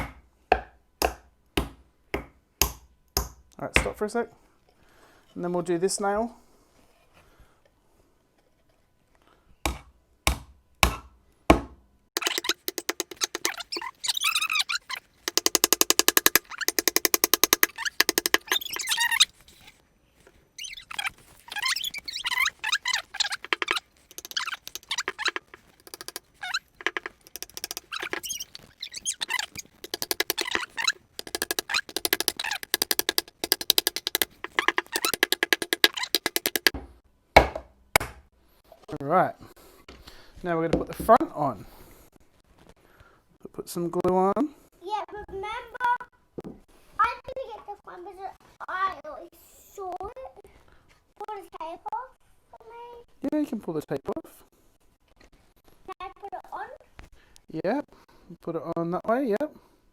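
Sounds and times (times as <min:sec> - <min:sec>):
hammer striking nail into wood: 0:00.0 - 0:03.9, 0:09.7 - 0:13.5, 0:15.3 - 0:18.5, 0:31.2 - 0:38.2
rapid clicking: 0:12.2 - 0:19.3, 0:21.4 - 0:36.8
high squeaky sounds: 0:12.2 - 0:19.8, 0:20.6 - 0:36.8.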